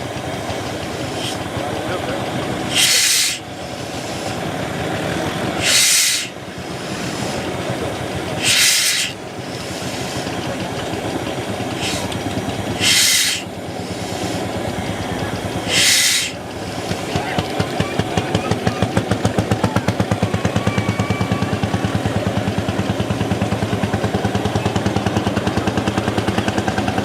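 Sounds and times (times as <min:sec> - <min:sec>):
loud hissing rushes: 0:00.0 - 0:27.0
threshing machine running: 0:00.0 - 0:27.0
tractor engine running: 0:00.0 - 0:27.0.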